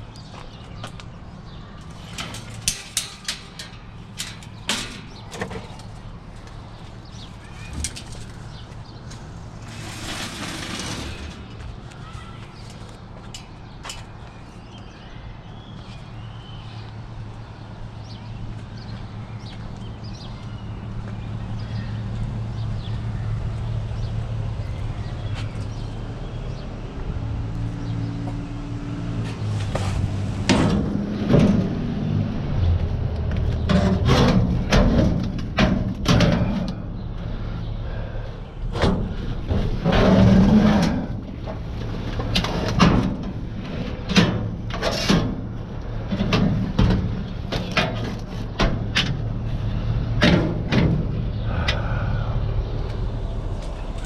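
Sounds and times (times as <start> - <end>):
scrap metal clanking: 1.9 - 6.0, 9.4 - 14.0
steady low hum: 48.9 - 54.0.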